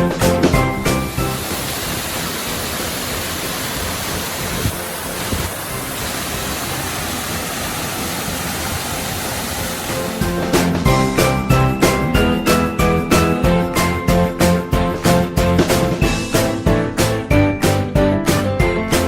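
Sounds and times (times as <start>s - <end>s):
music: 0.0s - 19.0s
waterfall rushing and crashing: 0.8s - 10.9s.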